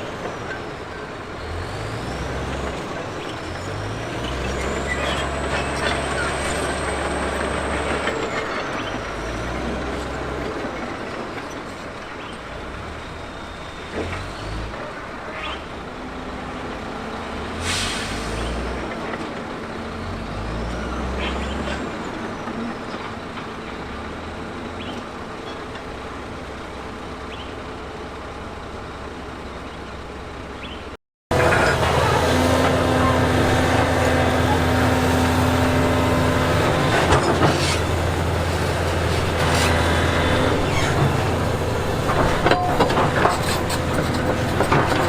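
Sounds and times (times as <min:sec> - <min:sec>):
heavy machine diesel engine running: 0:00.0 - 0:30.6, 0:31.3 - 0:45.0
sharp hiss: 0:17.6 - 0:18.5.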